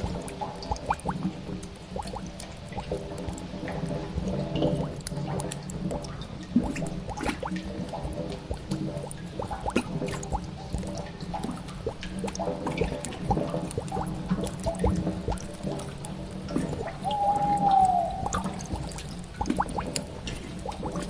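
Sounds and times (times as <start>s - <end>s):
water dripping and trickling: 0.0s - 21.0s
long moaning tone: 17.0s - 18.6s
low drone: 17.0s - 19.4s.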